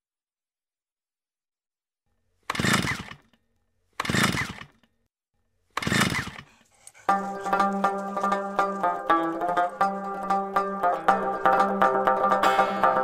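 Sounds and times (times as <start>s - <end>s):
chainsaw revving: 2.4s - 3.3s, 4.0s - 4.8s, 5.8s - 10.3s.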